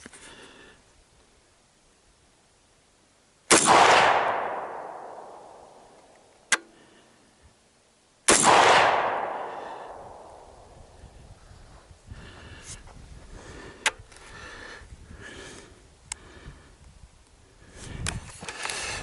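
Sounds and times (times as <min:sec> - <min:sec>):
rifle shots with rolling echo: 0:03.5 - 0:06.5, 0:08.3 - 0:11.0.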